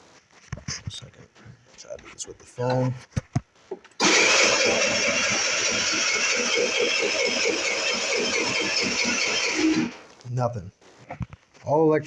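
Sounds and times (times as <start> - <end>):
scooter starter cranking engine: 4.0 - 10.0.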